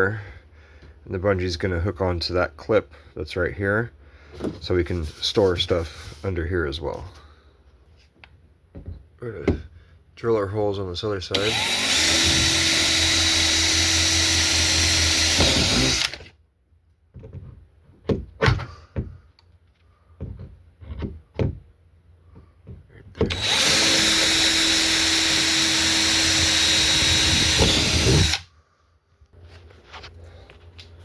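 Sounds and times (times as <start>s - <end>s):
power drill boring through plastic: 11.3s - 16.3s, 23.2s - 28.5s
drill bit knocks and clicks: 11.4s - 16.3s, 23.2s - 28.4s.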